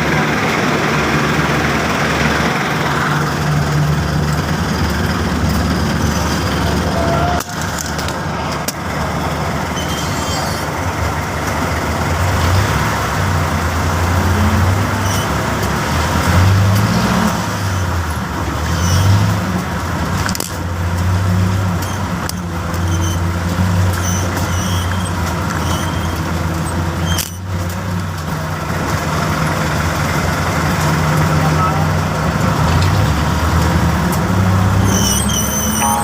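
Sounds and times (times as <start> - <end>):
vehicle engine running: 0.0 - 9.8
street noise: 0.0 - 36.0.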